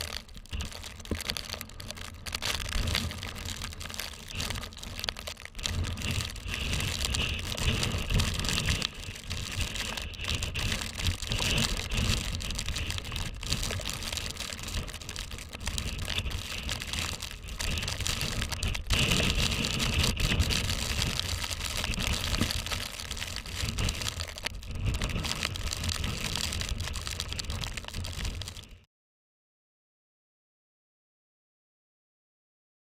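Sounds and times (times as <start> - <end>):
blown snow crackling: 0.0 - 28.8
wind blowing on microphone: 2.5 - 28.8.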